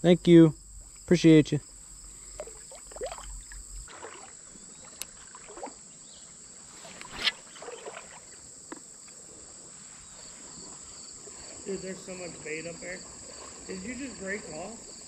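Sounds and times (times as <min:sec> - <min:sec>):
crickets trilling: 0:00.0 - 0:15.0.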